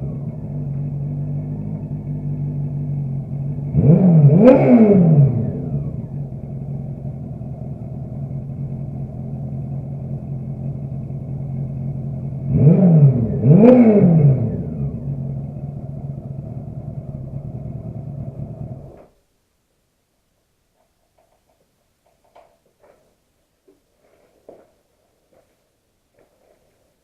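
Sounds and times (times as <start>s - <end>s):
motorcycle engine idling and revving: 0.0s - 19.1s.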